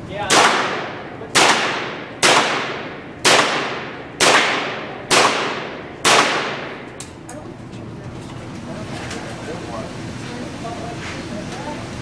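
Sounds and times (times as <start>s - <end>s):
rifle shots echoing: 0.3s - 7.0s.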